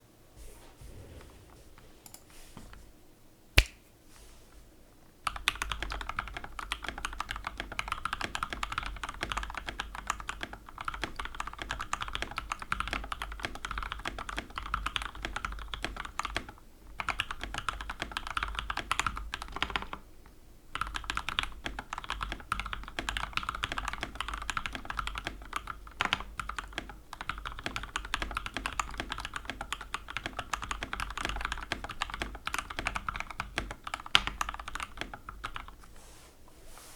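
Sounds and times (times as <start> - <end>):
sharp click: 3.6 - 3.8
fast typing on mechanical keyboard: 5.2 - 20.0, 20.7 - 35.8.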